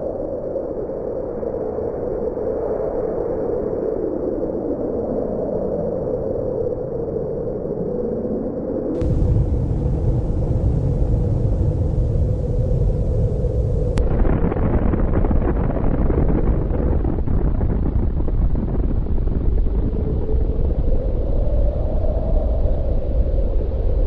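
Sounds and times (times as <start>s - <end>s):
deep explosion rumble: 9.0s - 21.7s.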